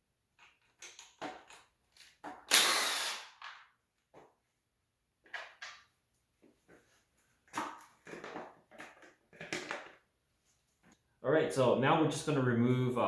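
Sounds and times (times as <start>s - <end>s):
power tool burst: 2.5s - 3.4s.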